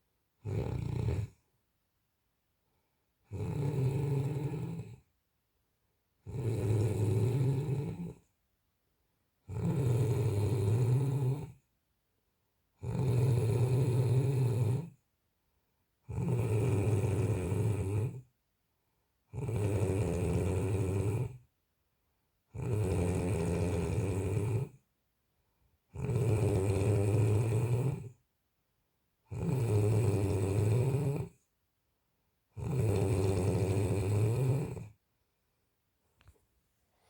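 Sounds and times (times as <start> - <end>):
person snoring: 0.4 - 1.4, 3.3 - 5.0, 6.3 - 8.2, 9.5 - 11.6, 12.8 - 14.9, 16.1 - 18.2, 19.3 - 21.4, 22.6 - 24.8, 26.0 - 28.1, 29.3 - 31.4, 32.6 - 34.9.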